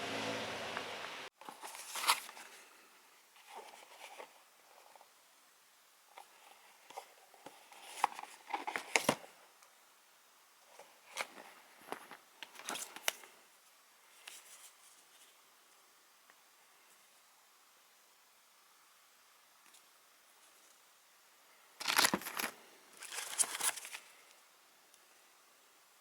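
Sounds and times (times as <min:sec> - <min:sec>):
packaging crinkling and crunching: 0:21.8 - 0:24.2.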